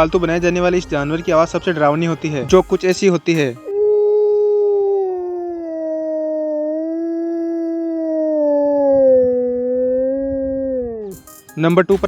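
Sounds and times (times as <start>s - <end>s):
wolf howling: 3.7s - 11.1s.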